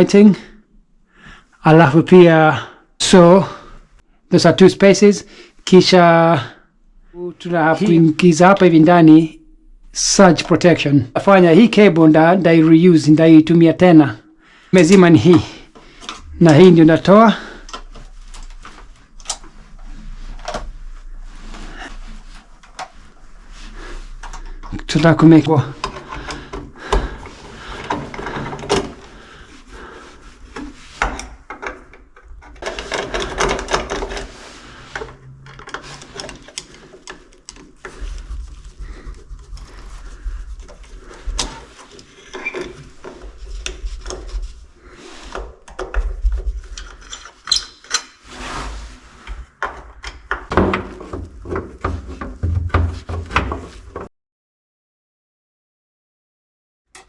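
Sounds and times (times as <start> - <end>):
clicks and knocks of handling cable: 17.6 - 19.5, 22.4 - 23.0, 24.2 - 24.8, 25.7 - 29.2, 30.5 - 39.7, 45.3 - 48.1, 49.3 - 54.1.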